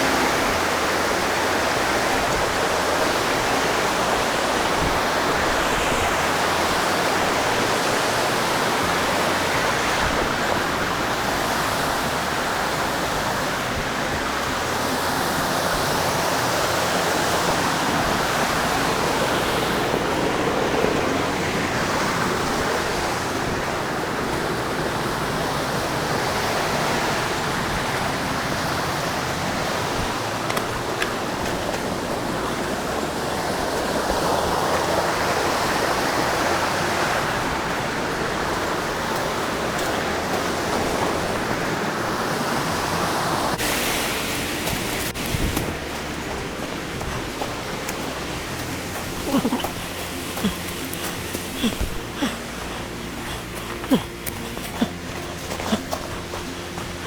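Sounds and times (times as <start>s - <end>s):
mountain stream rushing: 0.0s - 57.0s.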